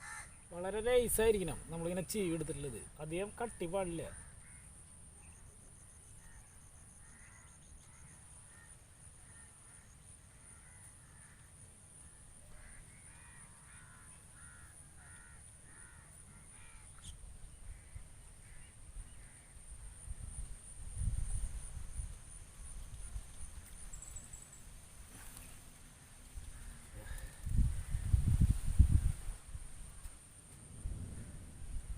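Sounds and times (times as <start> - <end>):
crows cawing: 0.0 - 0.5, 3.5 - 4.8, 7.0 - 19.6, 26.4 - 28.3.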